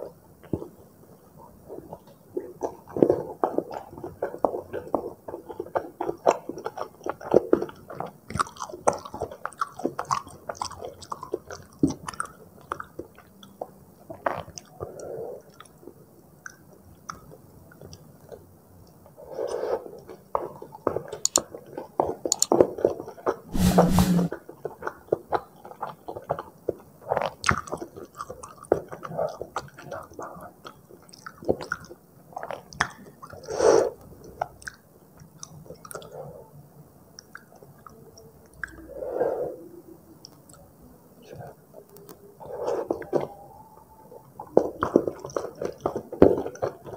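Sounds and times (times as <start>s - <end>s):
chewing noodles: 1.7s - 23.4s, 24.8s - 33.5s, 34.2s - 36.5s, 37.1s - 39.0s, 42.5s - 46.9s
wet mouth clicks and smacks: 21.2s - 21.4s, 22.3s - 22.6s, 37.2s - 38.8s.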